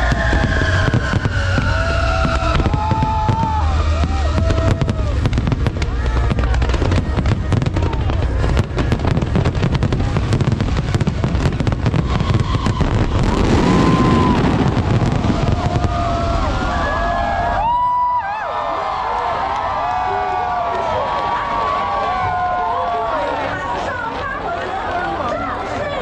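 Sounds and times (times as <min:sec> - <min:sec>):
fireworks crackling and banging: 0:00.0 - 0:18.4
whistling fireworks: 0:00.0 - 0:18.4.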